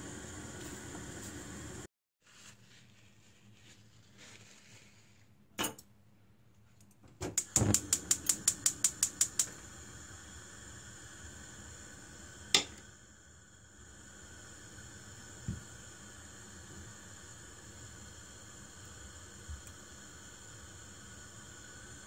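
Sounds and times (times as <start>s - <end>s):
gas burner hissing: 0.0s - 1.9s, 7.2s - 22.0s
gas stove igniter clicking: 7.2s - 9.7s, 12.5s - 12.9s.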